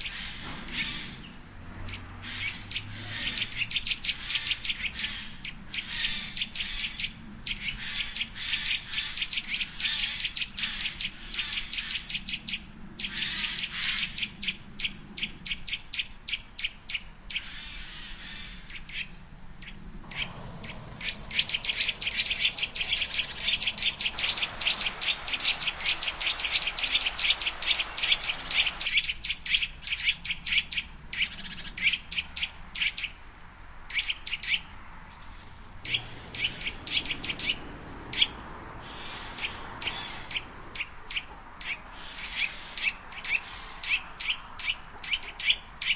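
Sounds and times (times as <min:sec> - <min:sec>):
songbirds chirping: 0:19.6 - 0:29.1.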